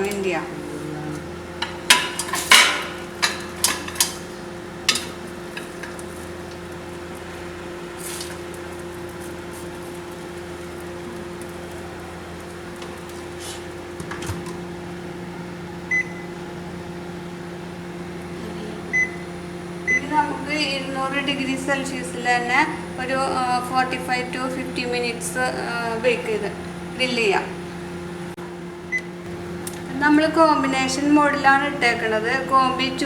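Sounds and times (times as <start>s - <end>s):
microwave oven humming: 0.0s - 33.0s.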